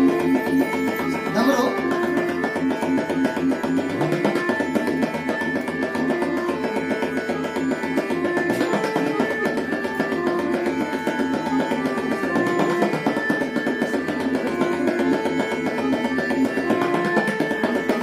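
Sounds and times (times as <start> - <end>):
looping melody in held notes: 0.0 - 18.0
rapid tabla strokes: 0.0 - 18.0.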